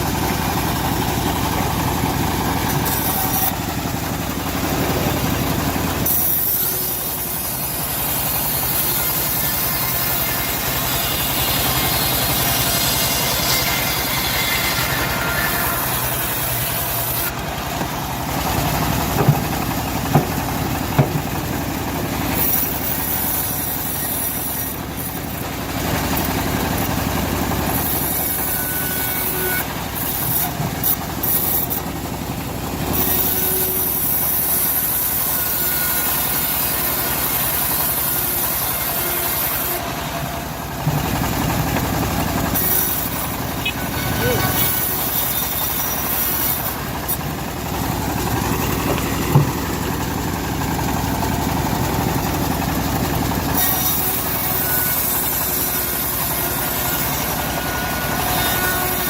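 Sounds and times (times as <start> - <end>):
bandsaw mill droning: 0.0 - 59.0
sharp knocks: 17.8 - 21.4, 48.8 - 49.7.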